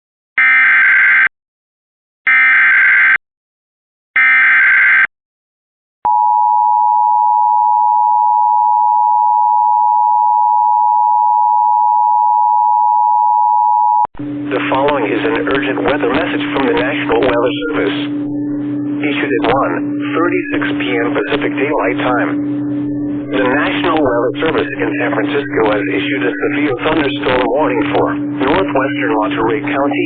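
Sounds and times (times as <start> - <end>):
steady alert tone: 14.2 - 30.0
data burst tones: 14.6 - 30.0.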